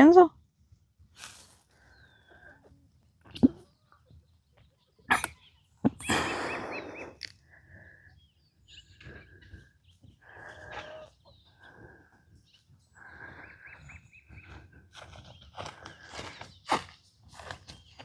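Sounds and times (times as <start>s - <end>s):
chickens clucking: 8.9s - 14.7s.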